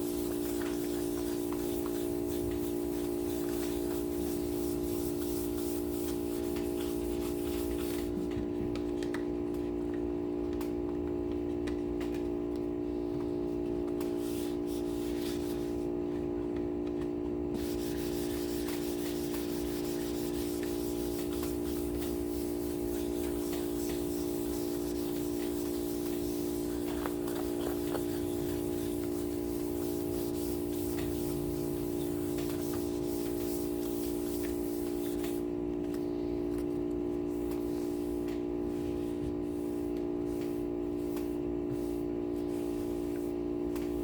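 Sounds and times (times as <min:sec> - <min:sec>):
wet sandpaper rubbing: 0:00.0 - 0:08.1, 0:14.1 - 0:15.8, 0:17.6 - 0:35.5
steady hum: 0:00.0 - 0:44.0.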